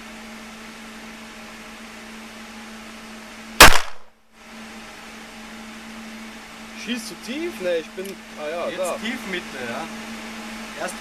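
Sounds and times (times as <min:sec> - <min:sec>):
loud pistol shot: 0:03.6 - 0:04.1.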